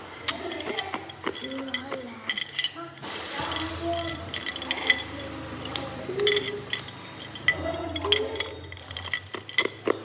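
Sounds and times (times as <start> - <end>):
ice cubes clinking and cracking: 0.1 - 10.0.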